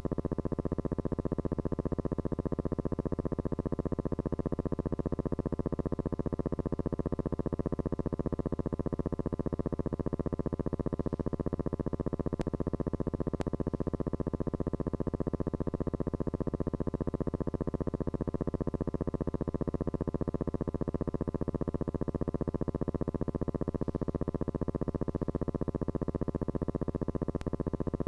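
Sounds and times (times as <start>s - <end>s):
pulsing electronic buzz: 5.2s - 28.0s
faint clicks: 27.4s - 27.6s.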